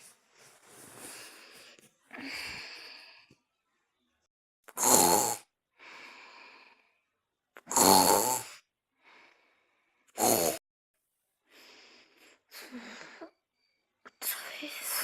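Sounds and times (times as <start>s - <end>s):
soft breaths: 0.0s - 3.4s, 5.8s - 7.1s, 9.0s - 10.2s, 11.5s - 15.0s
loud snoring: 4.7s - 5.5s, 7.6s - 8.6s, 10.2s - 10.6s.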